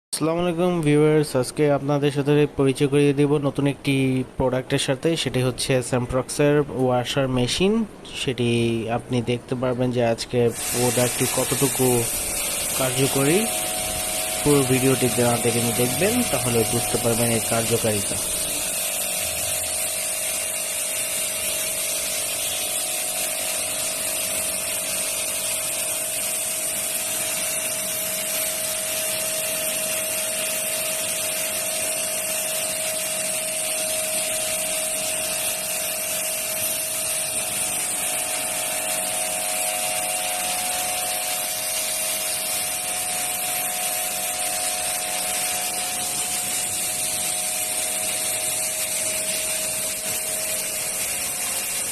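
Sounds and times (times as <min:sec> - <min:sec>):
water jet hissing: 0:10.3 - 0:51.9
pressure washer motor whine: 0:10.5 - 0:51.9.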